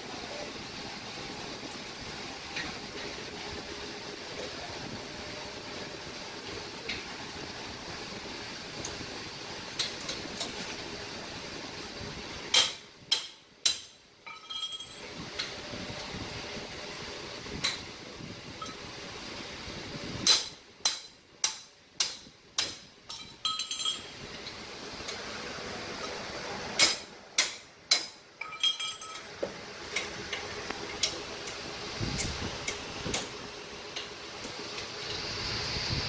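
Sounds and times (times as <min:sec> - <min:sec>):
tool striking metal parts: 0:12.5 - 0:15.0, 0:20.3 - 0:24.2, 0:26.8 - 0:29.3.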